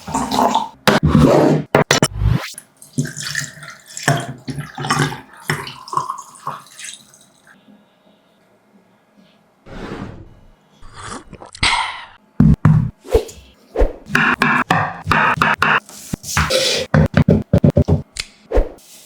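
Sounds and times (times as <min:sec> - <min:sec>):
water splashing in a sink: 0:02.6 - 0:07.6.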